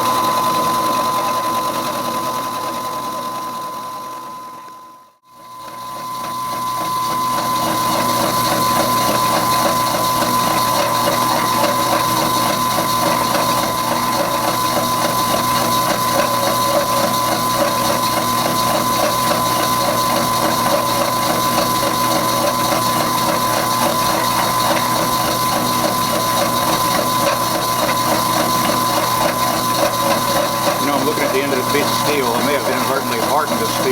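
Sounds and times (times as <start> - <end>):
saw cutting steel chatter: 7.5 - 33.9.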